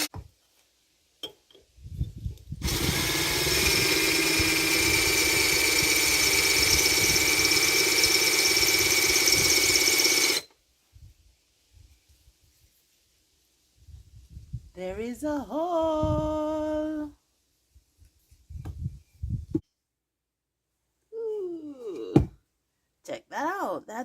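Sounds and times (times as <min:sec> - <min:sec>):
power drill grinding porcelain: 0:02.6 - 0:10.5.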